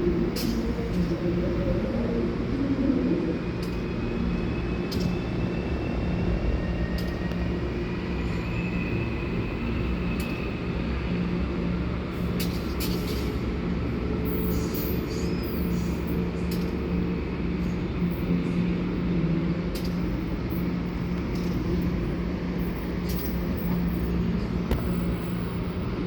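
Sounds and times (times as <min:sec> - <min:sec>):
train rumbling: 0:00.0 - 0:26.0
faint high squeal: 0:04.0 - 0:10.5.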